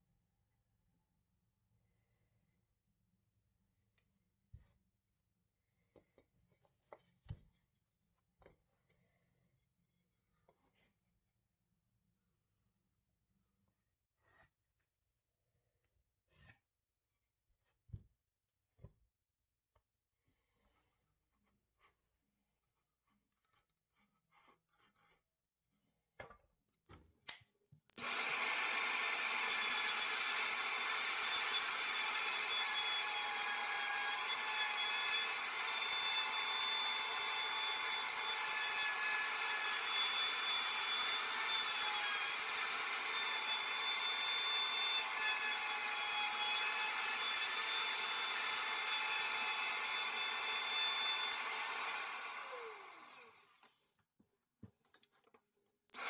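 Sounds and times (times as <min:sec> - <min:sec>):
power tool cutting wood: 0:28.0 - 0:54.0.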